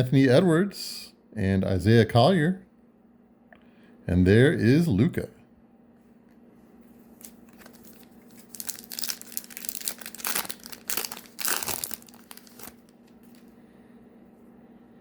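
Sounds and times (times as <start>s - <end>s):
foil wrapper crinkling and tearing: 7.2s - 13.5s.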